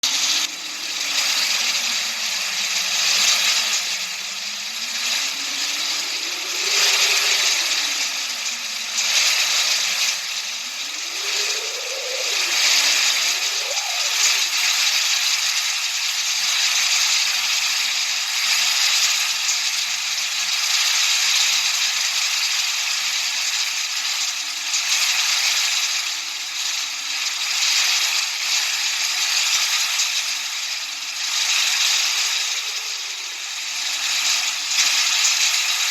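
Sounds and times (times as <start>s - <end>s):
hissing noise: 0.0s - 18.2s, 30.3s - 35.9s
faint low wavering tone: 0.4s - 15.3s.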